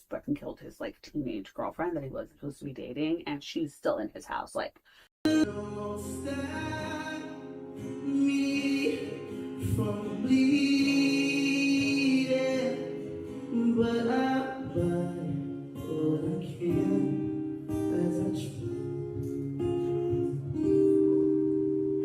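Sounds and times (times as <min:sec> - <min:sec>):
guitar: 0:05.2 - 0:22.0.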